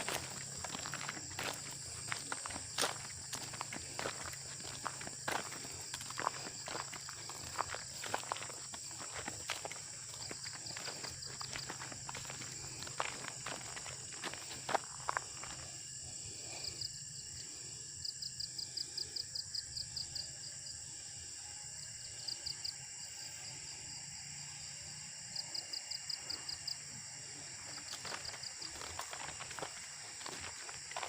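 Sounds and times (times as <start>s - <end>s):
footsteps: 0.0s - 15.8s, 27.4s - 31.0s
cricket-like chirping pulses: 0.0s - 31.0s
insects buzzing: 0.0s - 31.0s.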